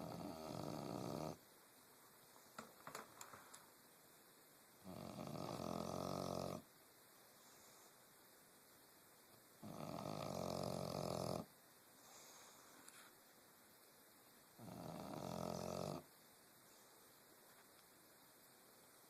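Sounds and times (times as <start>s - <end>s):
dog snoring: 0.0s - 1.4s, 4.8s - 6.7s, 9.6s - 11.5s, 14.6s - 16.1s
faint dog breath: 7.3s - 8.1s, 11.9s - 13.2s.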